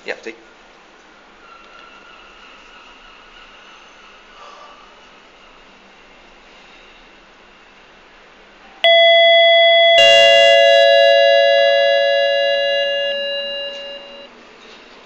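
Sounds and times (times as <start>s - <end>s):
lift arrival chime: 8.8s - 14.3s.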